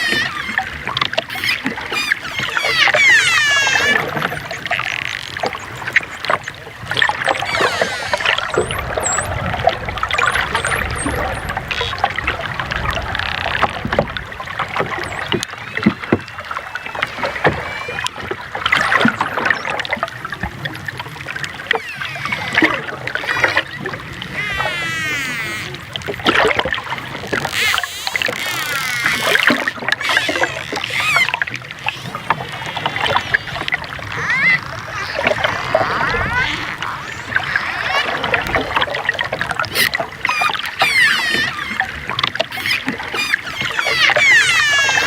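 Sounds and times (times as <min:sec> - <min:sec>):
dolphin clicks: 0:00.0 - 0:09.2, 0:39.6 - 0:45.0
dolphins whistling: 0:00.0 - 0:13.5, 0:14.9 - 0:19.9, 0:21.6 - 0:25.9, 0:27.5 - 0:45.0
rushing water: 0:00.0 - 0:45.0.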